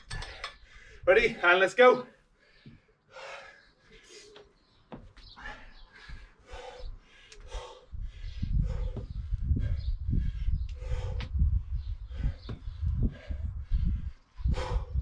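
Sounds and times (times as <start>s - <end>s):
person breathing hard: 0.1s - 1.1s, 2.2s - 4.5s, 5.4s - 15.0s
low rumble: 8.0s - 15.0s.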